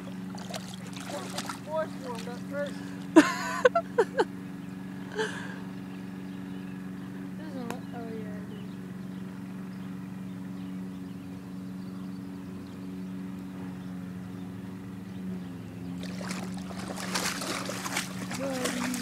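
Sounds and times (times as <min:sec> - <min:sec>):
splashing in water: 0:00.0 - 0:03.3, 0:16.0 - 0:19.0
low motor hum: 0:00.0 - 0:19.0.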